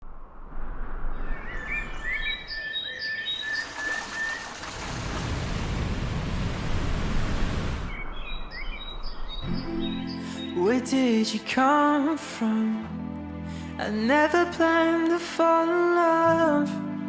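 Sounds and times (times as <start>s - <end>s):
birds chirping: 1.1s - 4.8s, 7.8s - 11.3s.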